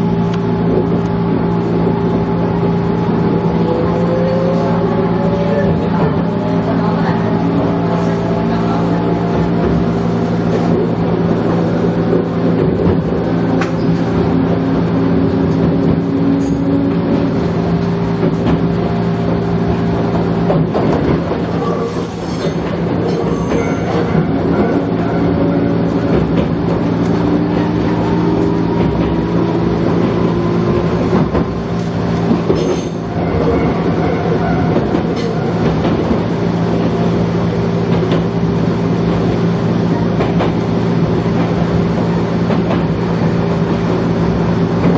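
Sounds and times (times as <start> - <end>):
electric train motor hum and whine: 0.0 - 44.9
wheels clicking over rail joints: 10.5 - 38.4.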